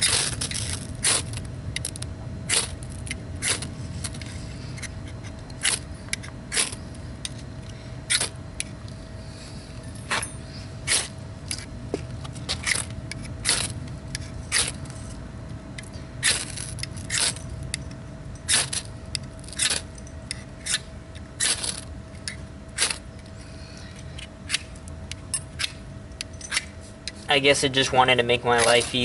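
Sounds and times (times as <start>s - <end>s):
ferrocerium rod scraping: 28.5s - 29.0s.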